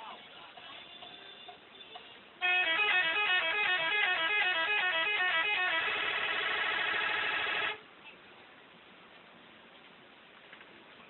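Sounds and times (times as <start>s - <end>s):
musical air horn tune: 2.4s - 6.2s.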